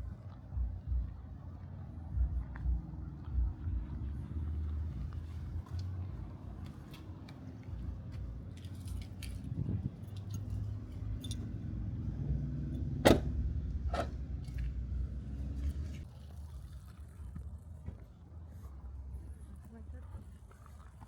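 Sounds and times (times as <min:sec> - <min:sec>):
low steady rumble: 0:00.0 - 0:21.0.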